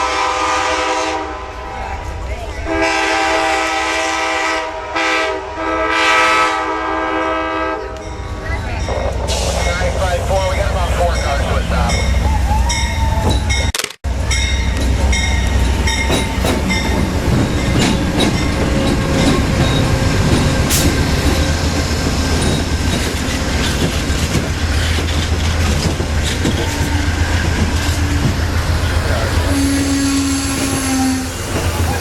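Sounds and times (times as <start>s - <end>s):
train cars rumbling: 0.0s - 32.0s
wheels clicking over rails: 15.6s - 28.8s
wheel squealing tones: 22.4s - 32.0s.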